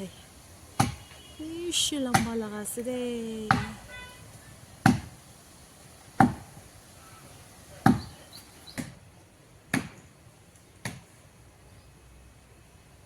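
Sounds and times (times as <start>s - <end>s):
axe chopping into wood: 0.8s - 1.1s, 3.5s - 3.8s, 4.8s - 5.2s, 6.2s - 6.5s, 7.8s - 8.2s, 9.7s - 10.0s, 10.8s - 11.1s.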